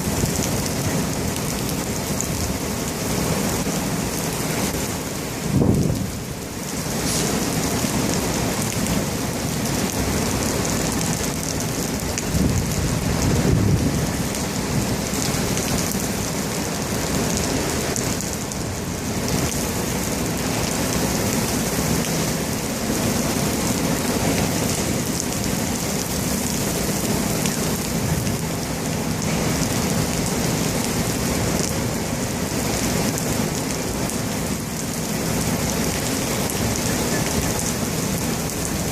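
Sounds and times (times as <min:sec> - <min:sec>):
heavy rain pouring: 0:00.0 - 0:38.9
thunder rumbling: 0:05.4 - 0:06.3, 0:12.1 - 0:16.0.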